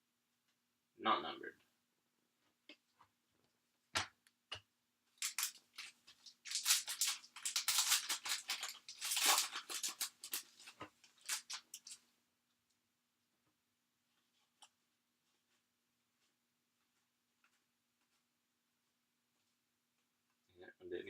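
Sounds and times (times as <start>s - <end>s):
foil wrapper crinkling and tearing: 5.2s - 12.0s.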